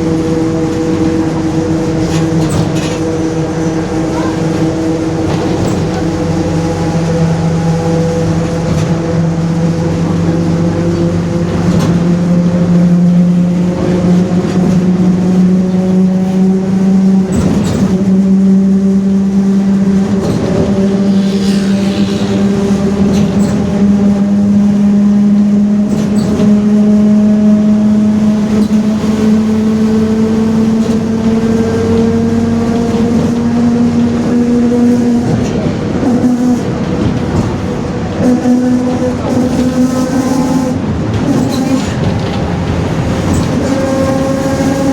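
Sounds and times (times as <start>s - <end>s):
bus differential droning roar: 0.0s - 44.9s.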